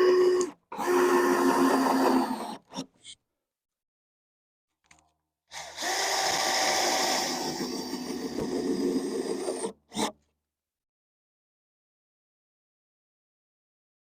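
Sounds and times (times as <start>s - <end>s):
power drill driving a screw: 0.8s - 2.8s, 5.5s - 10.1s.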